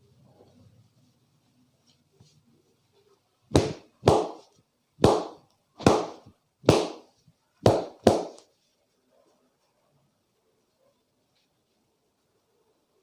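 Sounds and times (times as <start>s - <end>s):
sharp hand slaps: 3.6s - 4.4s, 5.0s - 7.0s, 7.7s - 8.5s.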